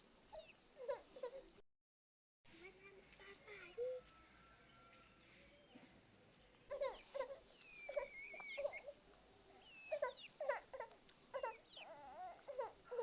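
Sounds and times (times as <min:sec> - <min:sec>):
animal high-pitched cries: 0:06.7 - 0:09.0, 0:09.8 - 0:13.0.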